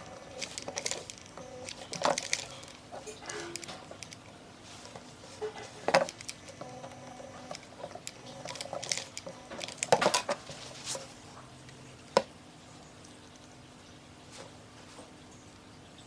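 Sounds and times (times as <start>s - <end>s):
small hard objects clicking: 0.0s - 4.4s, 5.8s - 10.3s
faint steady hum: 0.0s - 16.0s.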